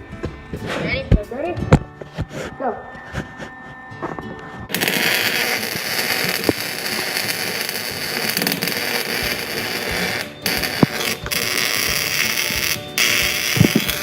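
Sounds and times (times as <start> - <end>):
sharp welding pops: 4.7 - 14.0
welding arc crackling hiss: 4.7 - 14.0.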